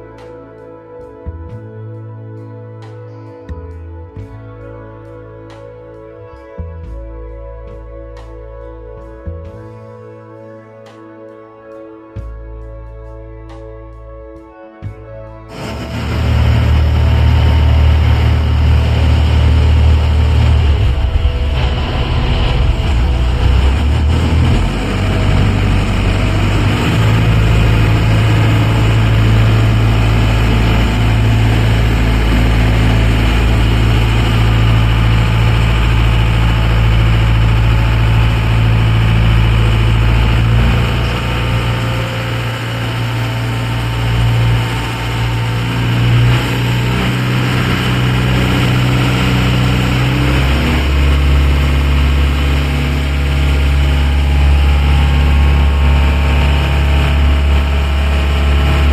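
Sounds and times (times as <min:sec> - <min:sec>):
ferry engine droning: 0:12.2 - 0:58.9.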